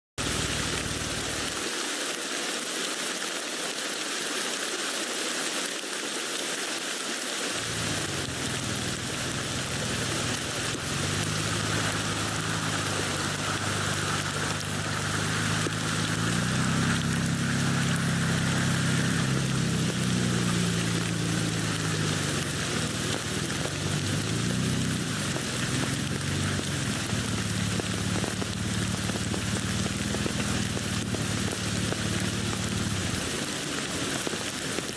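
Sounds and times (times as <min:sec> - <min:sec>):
low wavering rumble: 0:00.2 - 0:01.6, 0:07.6 - 0:33.3
rain pattering on a tent: 0:00.2 - 0:34.9.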